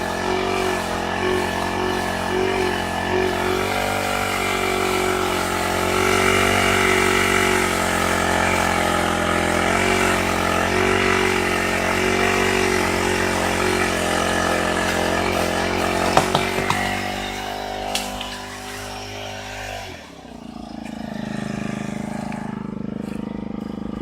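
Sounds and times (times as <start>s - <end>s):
brush cutter engine running: 0.0s - 24.0s.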